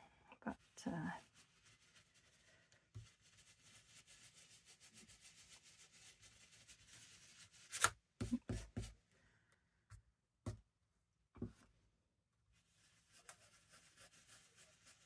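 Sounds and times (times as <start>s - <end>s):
ink rubbing through stencil: 13.1s - 15.0s.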